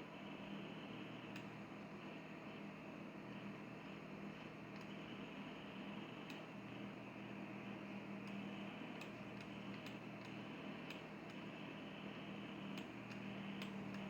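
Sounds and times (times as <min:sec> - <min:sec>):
low hum and hiss: 0:00.0 - 0:14.0
faint light ticks: 0:01.3 - 0:01.6.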